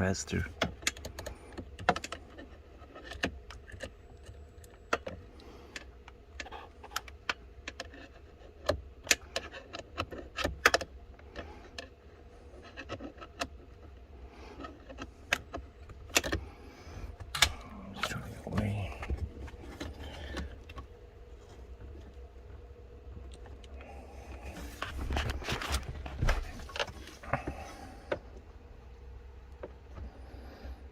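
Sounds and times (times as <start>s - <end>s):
steady low hum: 0.0s - 30.9s.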